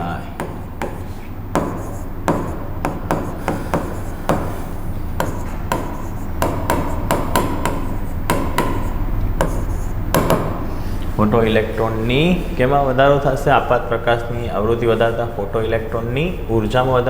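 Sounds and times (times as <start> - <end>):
sharp taps and knocks: 0.0 - 4.6, 5.2 - 10.7
steady low hum: 0.0 - 17.0.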